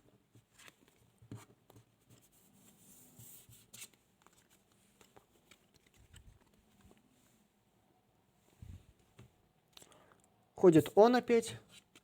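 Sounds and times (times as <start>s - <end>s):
soft rustle: 0.0s - 9.4s.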